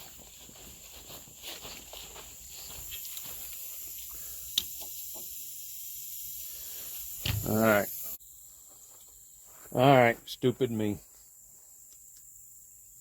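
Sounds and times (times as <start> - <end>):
steady high hiss: 0.6 - 11.0.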